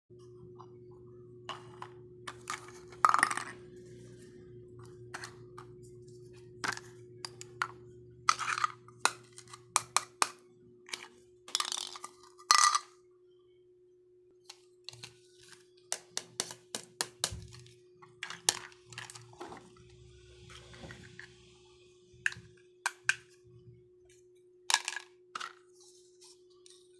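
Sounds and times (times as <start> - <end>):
steady low hum: 0.1 - 11.5, 16.6 - 24.8
toy pieces clinking: 11.5 - 12.9.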